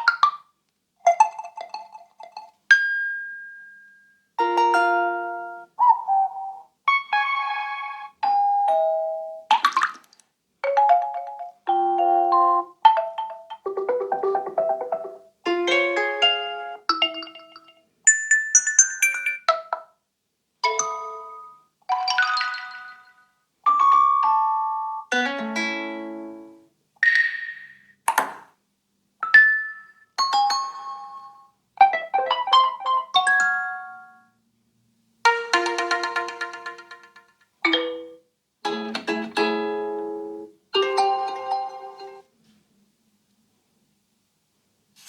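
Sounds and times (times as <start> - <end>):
bell-like ringtone chime: 17.1 - 19.5.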